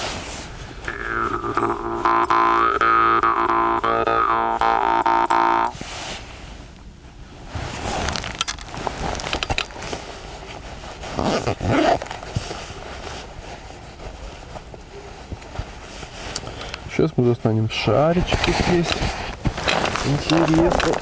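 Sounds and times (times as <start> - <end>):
rustling: 0.0 - 21.0
jaw harp twanging drone: 0.8 - 5.7.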